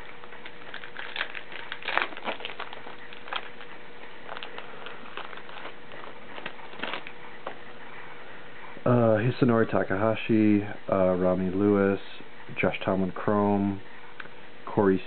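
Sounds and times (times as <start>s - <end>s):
wrapper crinkling and rustling: 0.0s - 7.6s.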